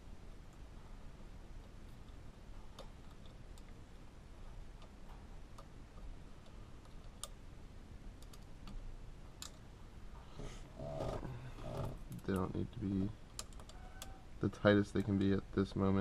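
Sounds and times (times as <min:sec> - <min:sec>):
light clicks of screws and hand tool: 0:01.6 - 0:03.8, 0:04.4 - 0:07.4.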